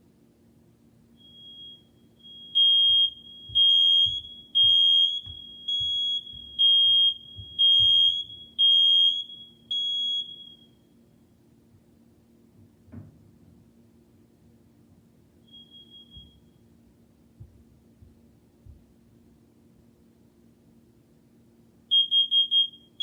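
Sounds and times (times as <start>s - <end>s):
smoke alarm beeping: 1.2s - 11.0s, 15.4s - 16.6s, 21.9s - 23.0s.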